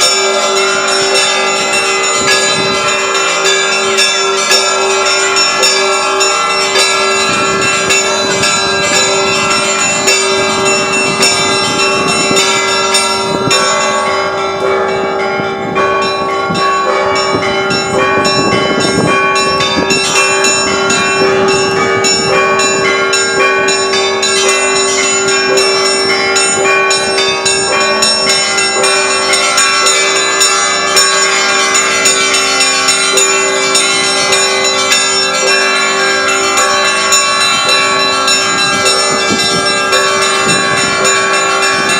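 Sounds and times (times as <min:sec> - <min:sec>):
church bells pealing: 0:00.0 - 0:41.9
low bell humming: 0:00.0 - 0:41.9.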